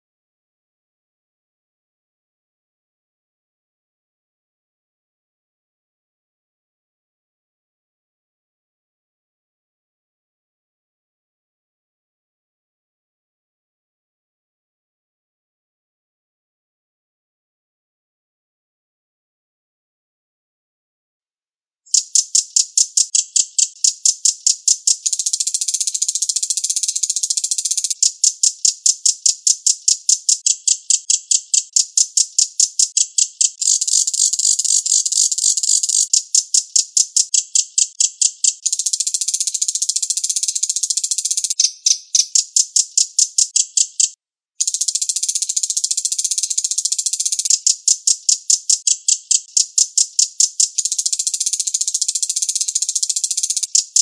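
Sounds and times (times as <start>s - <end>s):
bird high-pitched chattering: 21.9s - 54.0s.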